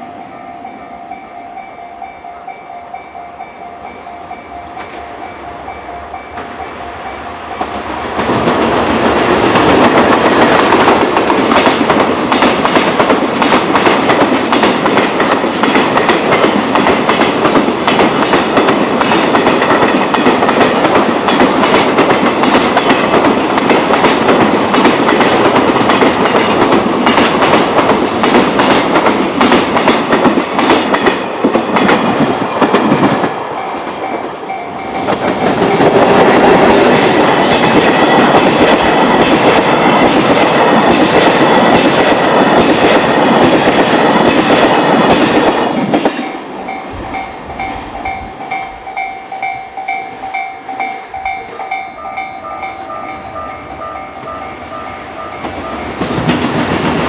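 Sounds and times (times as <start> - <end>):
freight train rolling past: 0.0 - 57.0
wheels clacking over rail joints: 7.5 - 49.1, 55.2 - 57.0.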